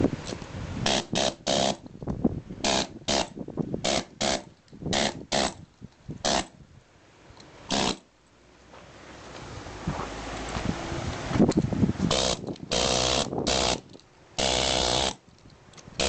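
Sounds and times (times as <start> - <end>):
pneumatic air hammer rattling: 0.2 - 2.0, 2.6 - 6.6, 7.7 - 8.1, 11.5 - 16.0.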